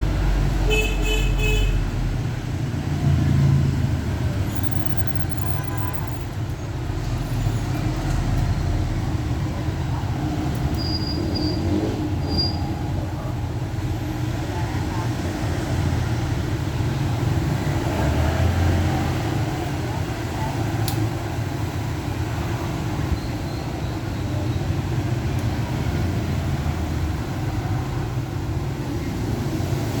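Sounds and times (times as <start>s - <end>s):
short high-pitched beeps: 4.4s - 6.3s.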